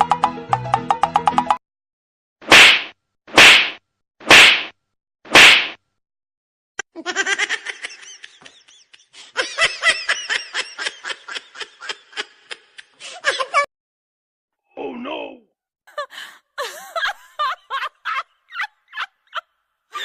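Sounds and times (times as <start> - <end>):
slap sound effects: 2.4 - 5.8.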